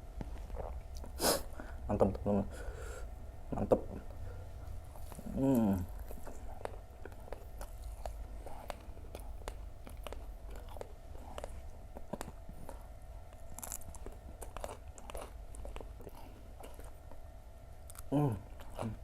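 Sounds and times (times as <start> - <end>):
crunchy chewing: 0.2 - 2.2, 3.6 - 19.0.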